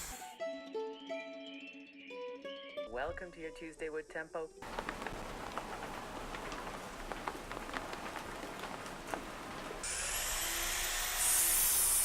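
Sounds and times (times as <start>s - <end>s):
rain pattering on a surface: 4.6s - 9.9s.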